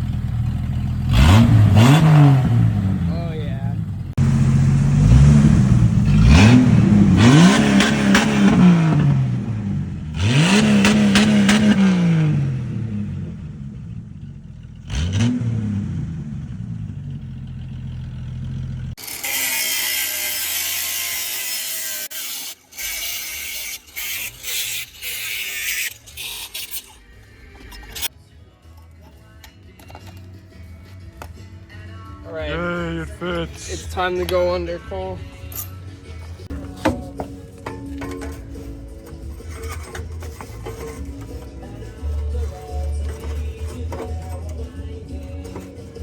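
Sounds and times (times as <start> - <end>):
engine revving: 0.0 - 19.0, 33.3 - 46.0.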